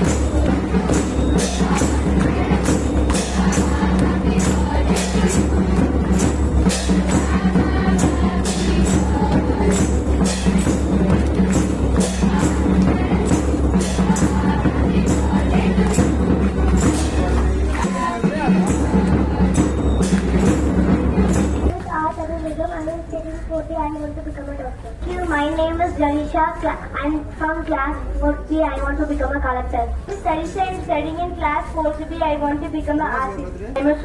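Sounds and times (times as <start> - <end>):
background music with steady beat: 0.0 - 21.9.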